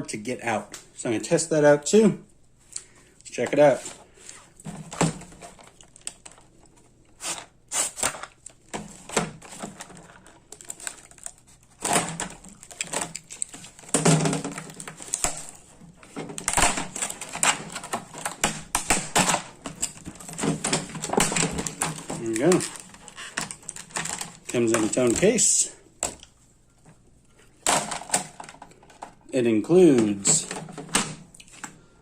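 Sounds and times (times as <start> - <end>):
plastic case clicks and rustles: 8.0 - 26.3.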